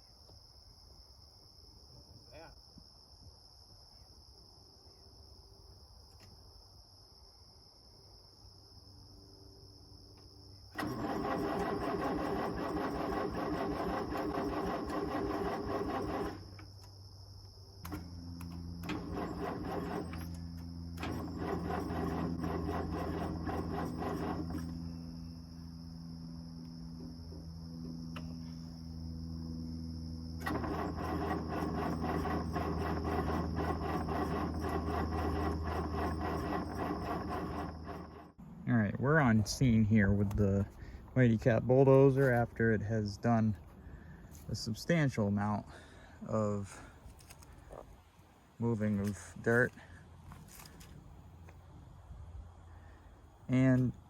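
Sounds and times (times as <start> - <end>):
crickets chirping: 0.0 - 40.0, 43.3 - 49.1, 49.7 - 54.0
bulldozer engine clattering: 10.8 - 16.7, 17.8 - 25.1, 30.4 - 38.4.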